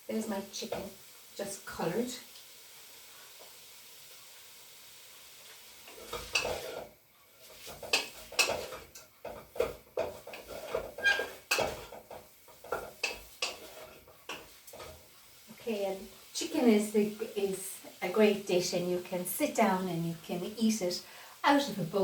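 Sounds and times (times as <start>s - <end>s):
chicken sizzling: 0.0s - 22.0s
utensil scraping a pot: 5.9s - 15.2s.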